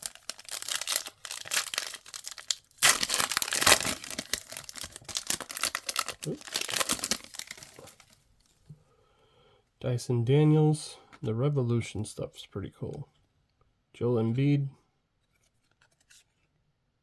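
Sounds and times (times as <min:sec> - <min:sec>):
wrapper tearing and crinkling: 0:00.0 - 0:08.2.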